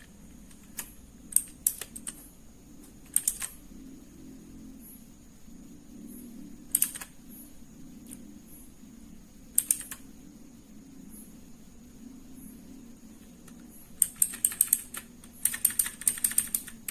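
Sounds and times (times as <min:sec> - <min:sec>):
mechanical keyboard keys clacking: 0:00.0 - 0:02.2, 0:03.1 - 0:03.6, 0:06.7 - 0:07.1, 0:09.6 - 0:10.0, 0:13.5 - 0:16.9
faint steady hum: 0:00.0 - 0:16.9.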